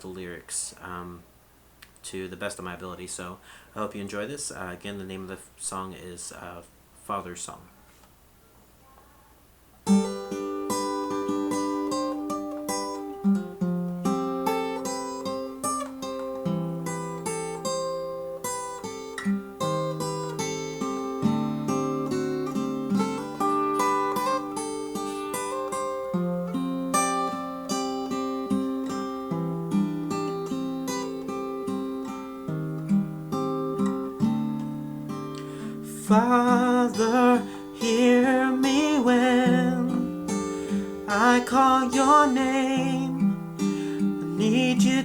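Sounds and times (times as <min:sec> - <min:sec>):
acoustic guitar playing slowly: 0:09.8 - 0:45.0.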